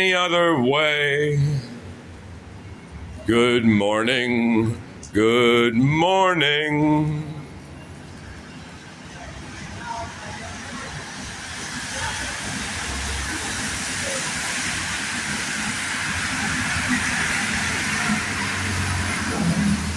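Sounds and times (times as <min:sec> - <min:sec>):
vehicle approaching rushing hiss: 0:09.5 - 0:19.9.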